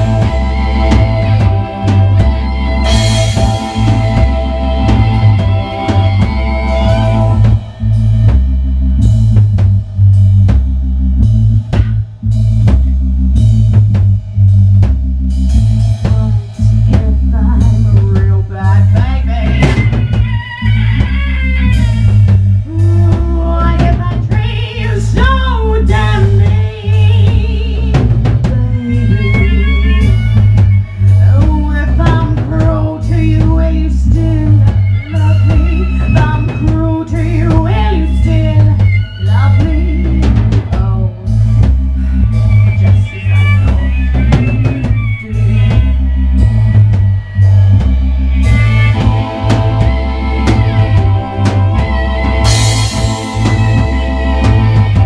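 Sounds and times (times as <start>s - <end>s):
wavering melody line: 0.0s - 9.2s, 42.2s - 55.0s
drum kit beat: 0.0s - 55.0s
pulsing bass line: 0.0s - 55.0s.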